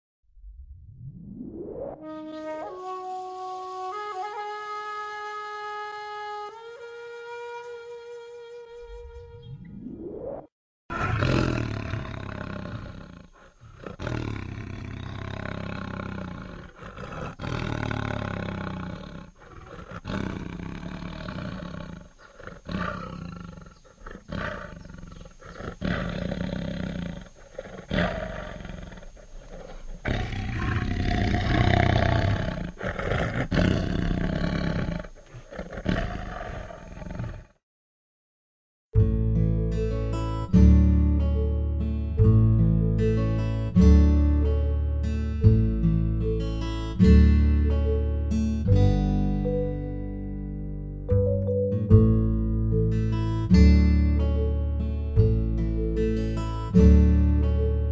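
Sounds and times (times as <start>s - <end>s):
tiger roaring and growling: 10.9s - 37.6s.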